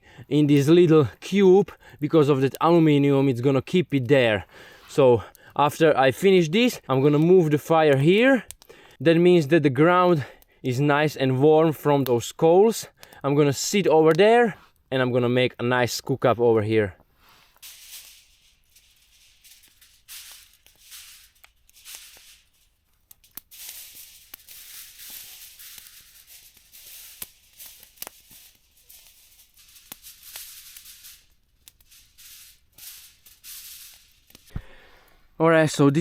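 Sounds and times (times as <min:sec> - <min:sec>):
aluminium foil crinkling: 0:17.2 - 0:34.9.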